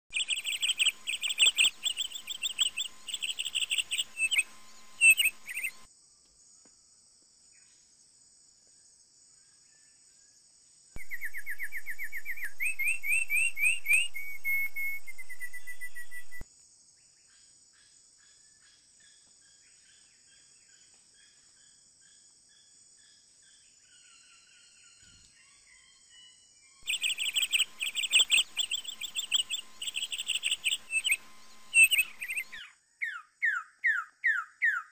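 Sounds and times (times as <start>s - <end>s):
birds chirping: 0.0s - 5.9s, 11.0s - 16.4s, 23.9s - 34.9s
rising trilled birdsong: 0.1s - 5.9s, 11.0s - 16.4s, 23.9s - 34.9s
high-pitched buzz: 0.2s - 5.9s, 11.0s - 16.4s, 26.8s - 32.6s.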